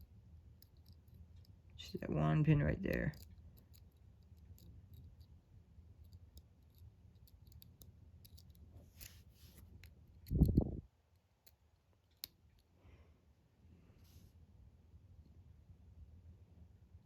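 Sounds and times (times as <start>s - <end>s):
lock pick clicking and scraping: 0.6s - 1.6s, 3.1s - 5.3s, 6.0s - 12.7s.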